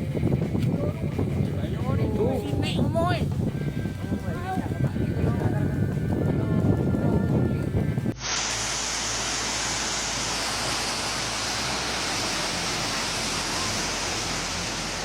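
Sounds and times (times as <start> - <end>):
mudflow rushing downhill: 8.1 - 15.0.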